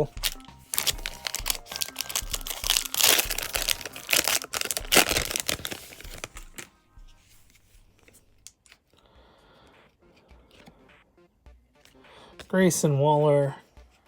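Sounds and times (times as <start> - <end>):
foil wrapper crinkling: 0.0 - 6.7.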